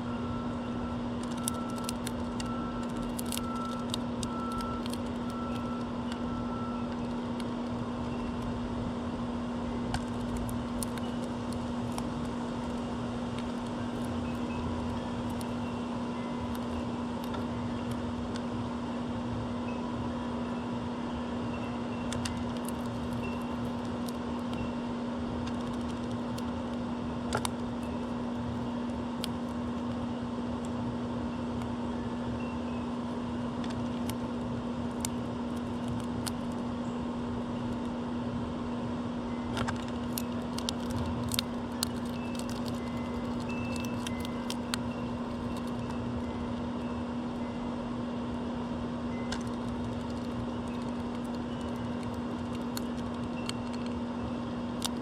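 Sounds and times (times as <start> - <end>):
steady mechanical hum: 0.0 - 55.0.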